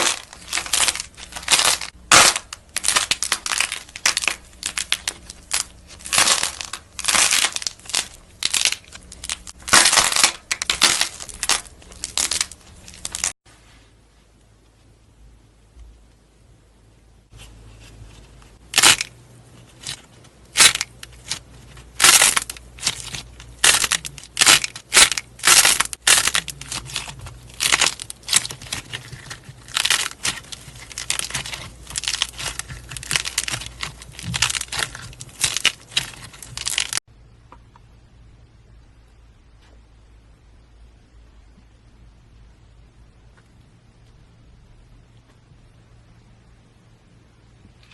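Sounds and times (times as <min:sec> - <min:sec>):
slime crackling and popping: 0:00.0 - 0:13.4, 0:18.6 - 0:37.0.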